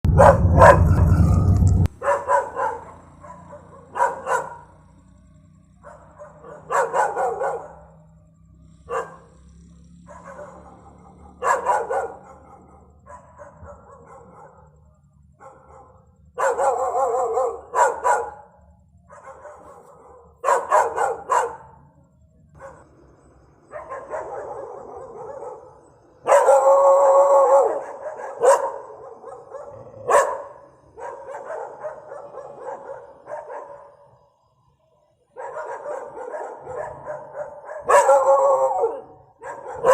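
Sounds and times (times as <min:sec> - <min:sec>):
low rumble: 0:00.0 - 0:01.9
dog barking aggressively: 0:00.1 - 0:01.3, 0:01.9 - 0:04.8, 0:05.8 - 0:08.0, 0:08.9 - 0:09.4, 0:10.0 - 0:14.8, 0:15.4 - 0:21.9, 0:22.6 - 0:23.0, 0:23.6 - 0:34.2, 0:35.3 - 0:39.9.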